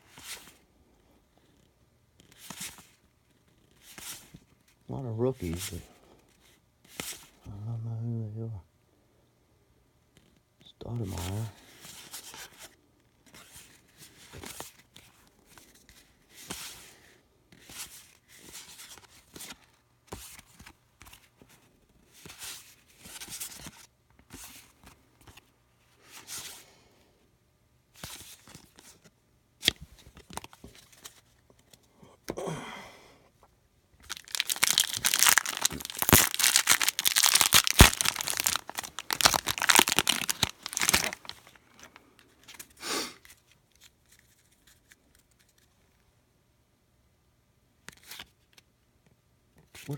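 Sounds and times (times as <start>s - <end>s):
card pack wrapper tearing: 34.0s - 41.9s.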